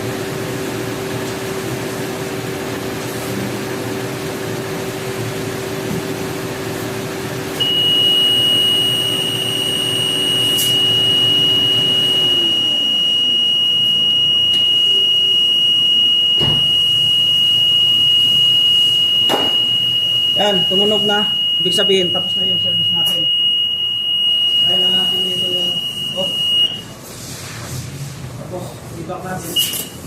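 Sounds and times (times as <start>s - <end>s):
mechanical hum: 0.0s - 30.0s
continuous high alarm beep: 7.6s - 26.9s, 29.6s - 30.0s.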